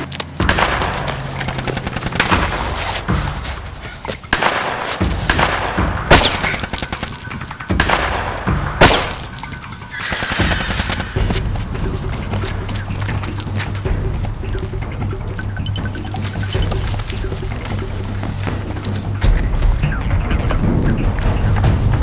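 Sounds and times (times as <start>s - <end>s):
low background music: 0.4s - 22.0s
gunshots and automatic fire: 1.4s - 3.6s, 4.2s - 11.6s
loud blasts: 1.5s - 3.3s, 6.1s - 7.9s, 10.1s - 11.6s.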